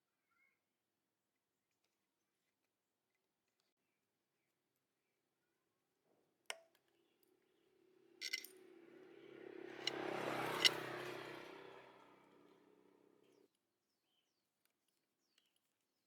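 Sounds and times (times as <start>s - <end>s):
sharp metallic clicks: 8.2s - 8.5s, 9.8s - 10.8s.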